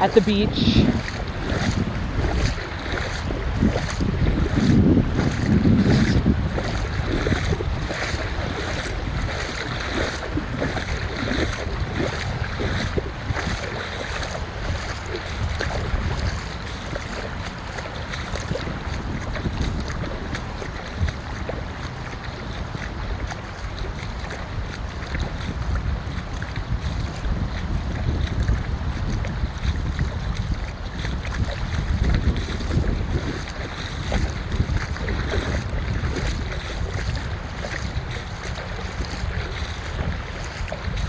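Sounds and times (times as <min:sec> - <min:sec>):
footsteps on beach: 0:00.0 - 0:41.0
wind buffeting microphone: 0:00.0 - 0:41.0
ocean surf: 0:06.8 - 0:26.3.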